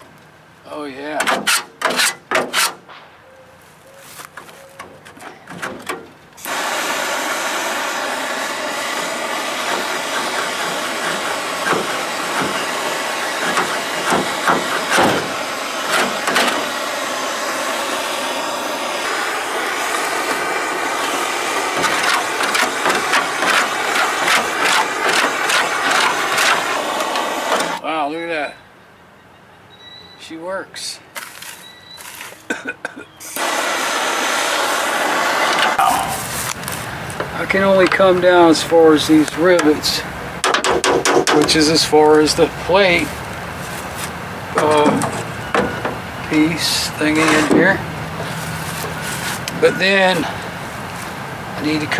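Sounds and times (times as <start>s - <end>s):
torch being lit: 6.4s - 27.8s, 33.3s - 36.8s
torch flame hissing: 6.4s - 27.8s, 33.2s - 40.1s.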